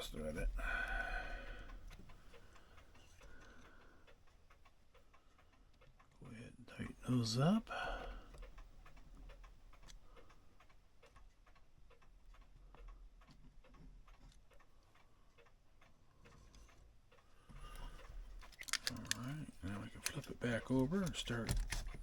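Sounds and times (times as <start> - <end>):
low steady hum: 0.0 - 3.5
small clicks and ticks: 0.0 - 22.0.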